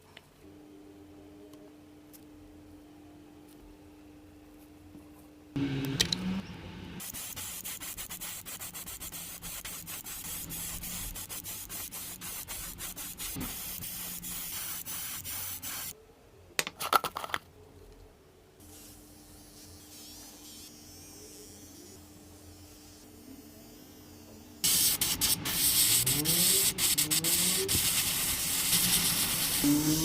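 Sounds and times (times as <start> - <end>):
sanding strokes: 7.0 - 15.9, 24.6 - 30.0.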